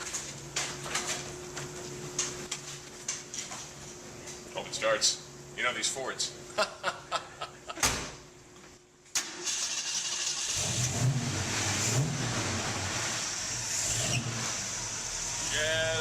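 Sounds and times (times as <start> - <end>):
engine idling and revving: 9.8 - 16.0.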